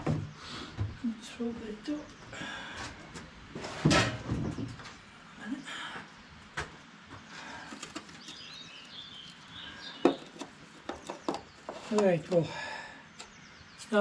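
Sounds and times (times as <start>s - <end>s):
small birds chirping: 4.3s - 14.0s.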